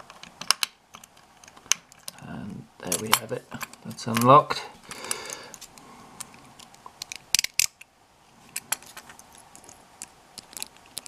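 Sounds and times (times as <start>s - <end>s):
lock pick clicking in lock: 6.2s - 7.9s.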